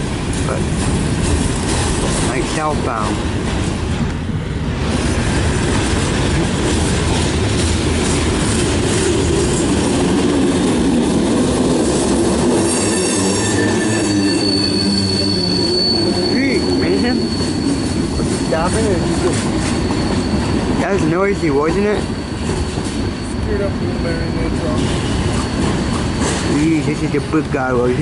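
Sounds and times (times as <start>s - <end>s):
train wheels rumbling on rails: 0.0s - 28.0s
high-pitched wheel squeal: 12.5s - 26.9s.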